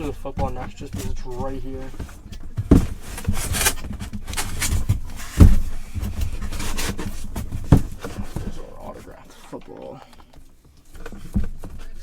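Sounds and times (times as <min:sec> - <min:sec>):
box rubbing and scraping: 0:00.0 - 0:09.5
box thumps: 0:00.4 - 0:09.1.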